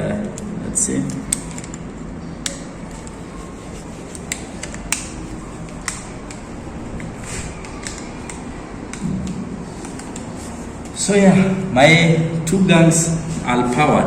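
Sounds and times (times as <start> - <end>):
steady background noise: 0.0 - 14.0
handling noise: 1.4 - 11.0
switch clicks: 4.3 - 6.4.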